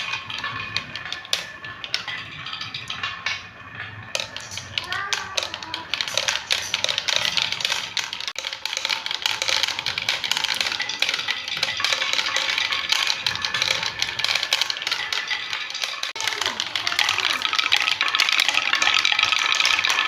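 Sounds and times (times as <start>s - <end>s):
marbles clattering down marble run: 0.0s - 20.0s.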